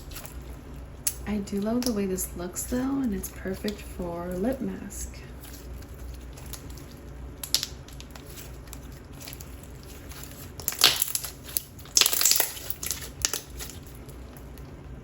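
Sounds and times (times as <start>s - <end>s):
slime crackling and clicking: 1.0s - 2.0s, 6.2s - 14.6s.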